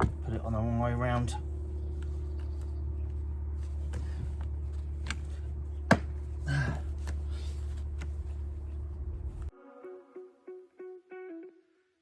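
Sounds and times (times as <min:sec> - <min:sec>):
steady low hum: 0:00.0 - 0:09.5.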